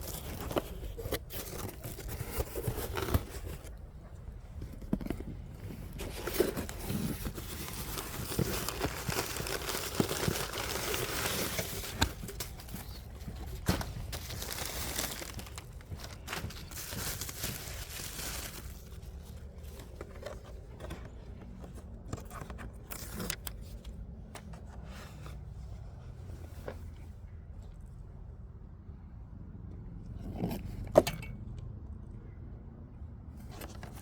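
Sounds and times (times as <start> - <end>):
packaging crinkling and tearing: 4.8 - 20.9.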